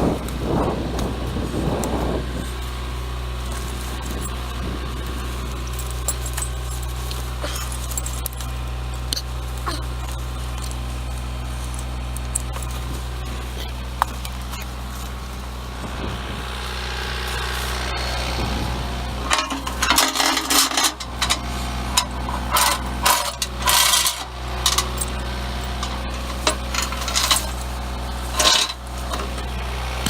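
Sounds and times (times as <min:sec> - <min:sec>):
diesel engine running: 0:00.0 - 0:30.0
metallic jingling: 0:05.2 - 0:09.1, 0:19.2 - 0:29.6.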